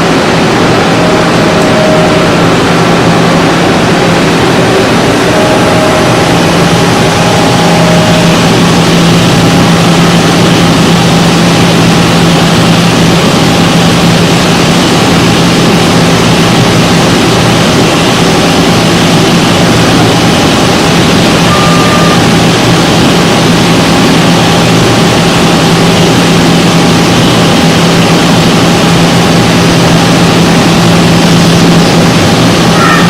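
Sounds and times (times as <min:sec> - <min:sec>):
machinery humming: 0:00.0 - 0:33.0.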